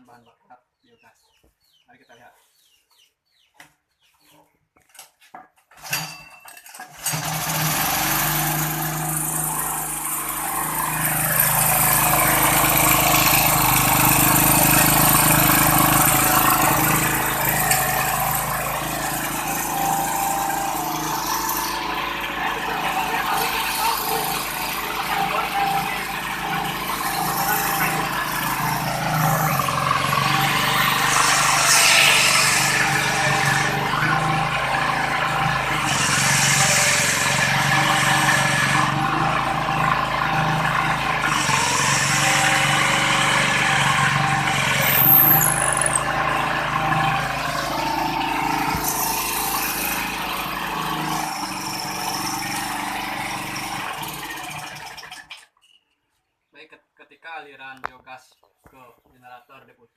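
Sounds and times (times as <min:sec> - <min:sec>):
generator engine drone: 0:07.1 - 0:54.9.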